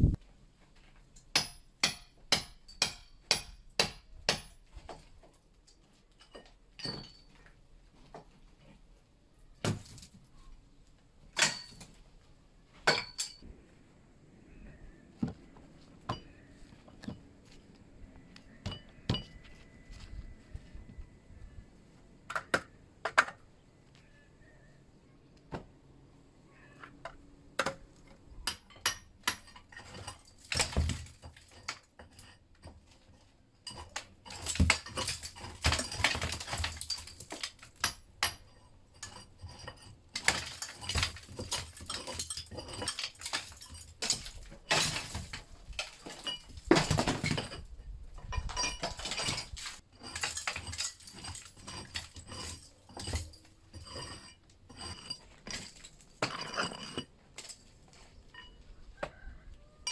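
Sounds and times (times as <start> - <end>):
hard objects clinking and knocking: 6.1 - 7.5, 12.8 - 13.5, 16.0 - 17.2, 26.8 - 59.9.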